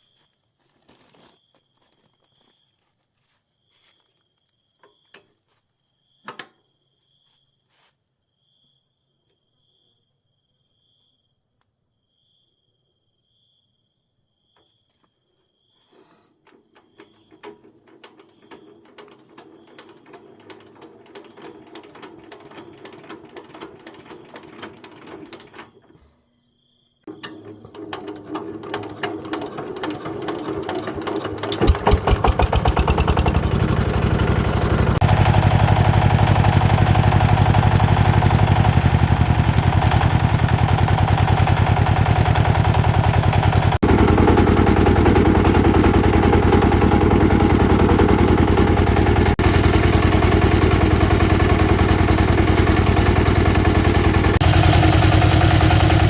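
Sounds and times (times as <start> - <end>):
chainsaw engine running: 28.8 - 56.0.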